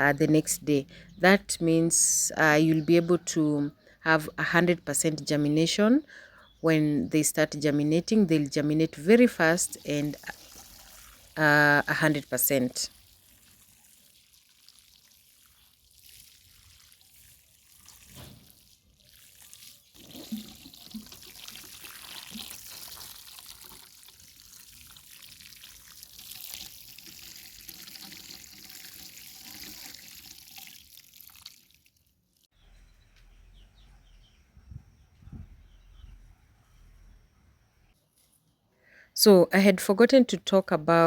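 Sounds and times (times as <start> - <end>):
faint running water: 8.5 - 31.9.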